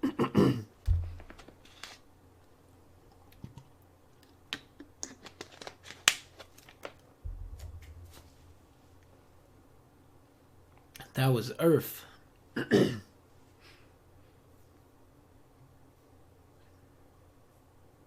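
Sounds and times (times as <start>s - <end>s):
low rumbling thud: 0.9s - 1.4s, 7.3s - 8.9s.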